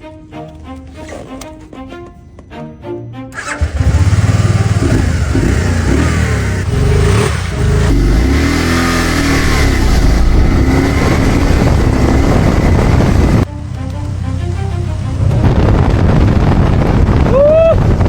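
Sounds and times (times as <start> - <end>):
vehicle engine accelerating: 3.4 - 17.2.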